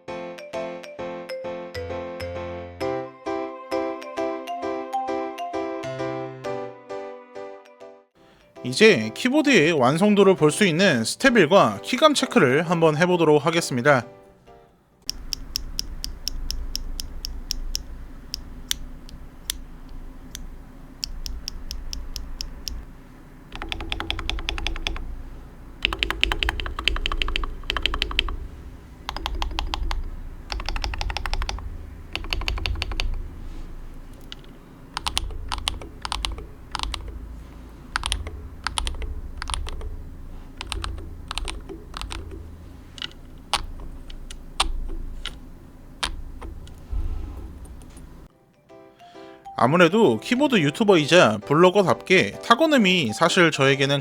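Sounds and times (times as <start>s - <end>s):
keyboard keys clicking: 15.0s - 22.9s, 23.5s - 48.3s.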